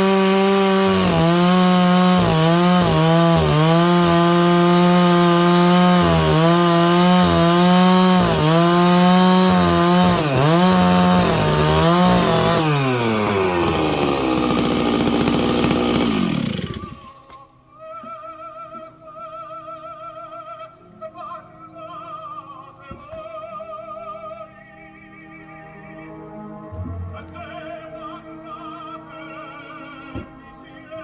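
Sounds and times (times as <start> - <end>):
chainsaw cutting log: 0.0 - 17.4.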